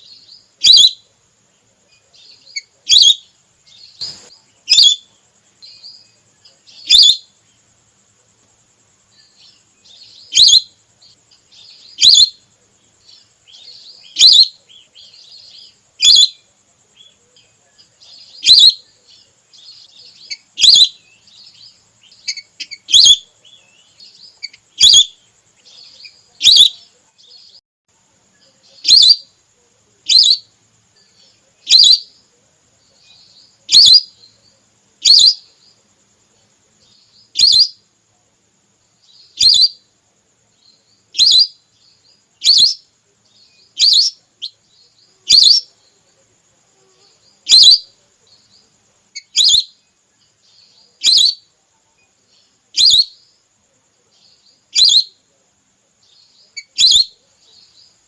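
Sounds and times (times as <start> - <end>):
faint chattering calls: 0.0 - 37.9, 38.9 - 58.0
whistling duck calls: 10.4 - 10.7, 51.0 - 51.4, 54.7 - 55.2.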